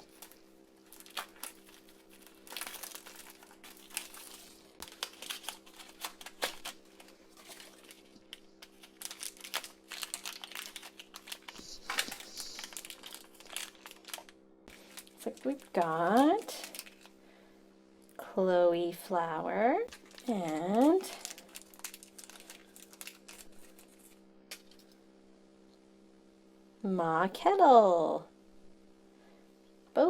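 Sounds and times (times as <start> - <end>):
plastic packaging crinkling and tearing: 0.0 - 17.2, 19.9 - 25.0.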